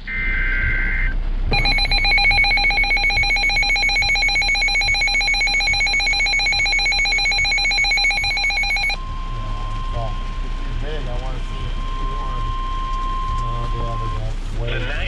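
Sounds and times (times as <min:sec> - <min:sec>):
buzzy alarm tone: 0:00.0 - 0:10.4.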